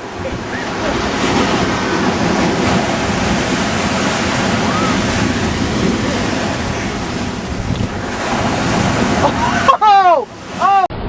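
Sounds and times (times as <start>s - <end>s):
ocean surf breaking on shore: 0.0s - 11.0s.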